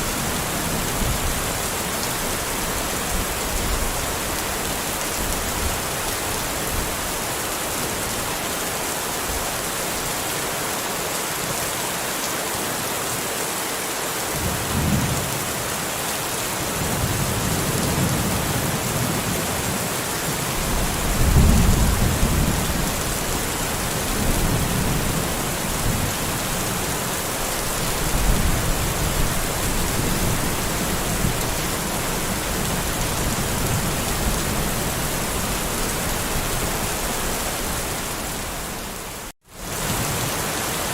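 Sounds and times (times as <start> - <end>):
steady rain falling: 0.0 - 40.9
thunder rumbling: 20.5 - 26.6.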